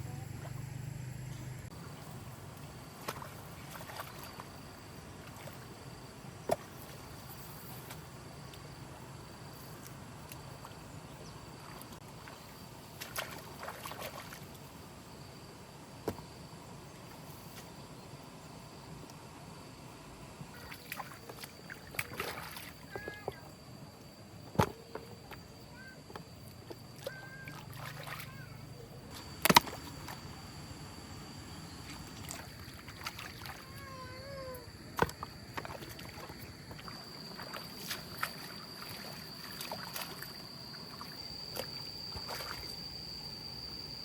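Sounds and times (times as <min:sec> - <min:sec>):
low background hum: 0:00.0 - 0:44.0
water sloshing and splashing: 0:02.9 - 0:05.9, 0:11.6 - 0:14.7, 0:20.5 - 0:23.5, 0:26.1 - 0:30.3, 0:31.8 - 0:34.2, 0:34.9 - 0:42.8.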